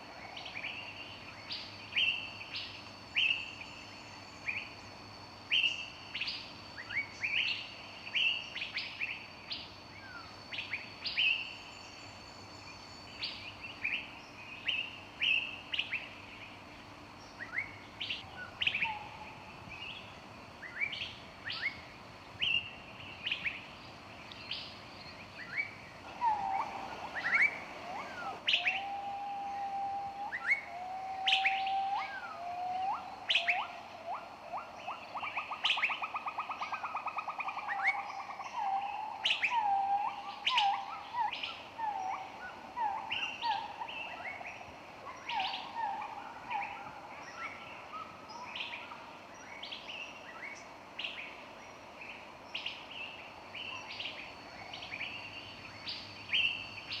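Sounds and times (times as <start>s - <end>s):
birds singing and chirping: 24.5s - 48.1s
lower whistled bird notes: 24.5s - 50.6s.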